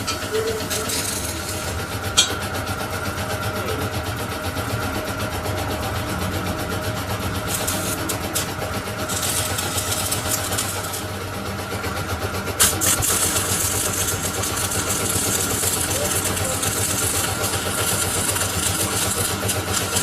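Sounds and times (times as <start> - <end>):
cutting tool scraping metal: 0.0 - 4.0, 7.1 - 20.0
metal lathe running: 0.0 - 20.0
sharp metal clank: 2.2 - 2.6.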